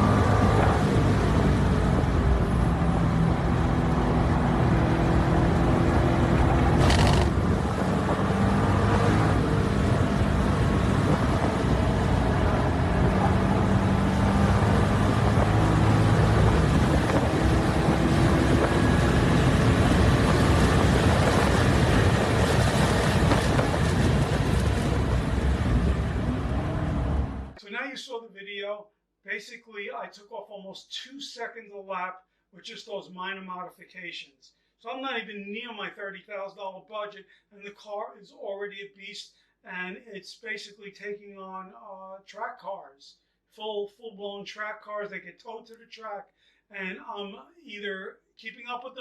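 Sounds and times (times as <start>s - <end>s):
car engine revving: 0.0s - 27.6s
steady rushing noise: 0.0s - 27.6s.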